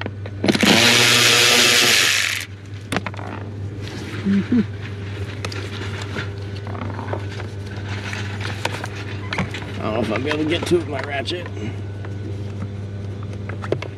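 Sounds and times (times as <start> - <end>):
power tool whirring: 0.4 - 2.5.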